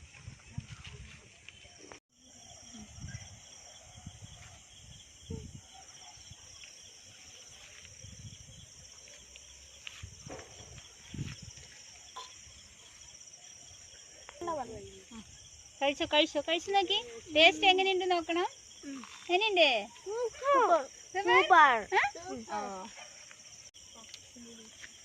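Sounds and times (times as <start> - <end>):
crickets chirping: 0.0 - 25.0.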